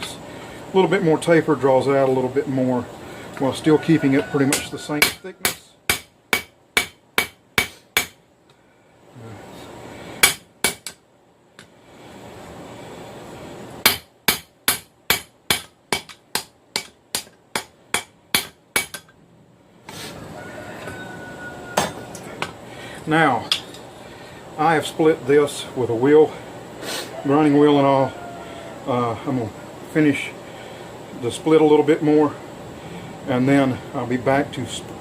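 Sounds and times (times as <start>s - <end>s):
hammer striking hot steel on anvil: 4.4s - 8.2s, 10.2s - 11.0s, 13.8s - 19.1s, 21.7s - 22.6s.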